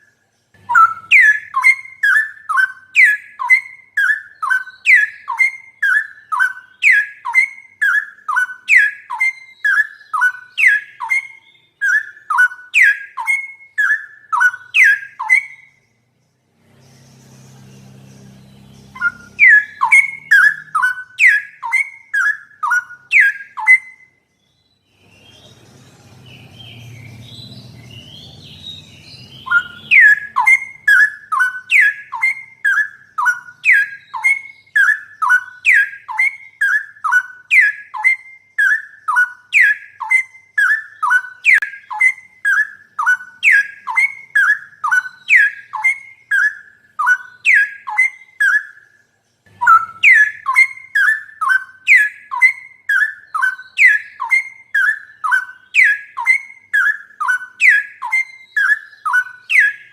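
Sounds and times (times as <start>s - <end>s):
bird whistling song: 0.0s - 59.9s
faint low hum: 15.2s - 23.0s, 24.9s - 35.6s.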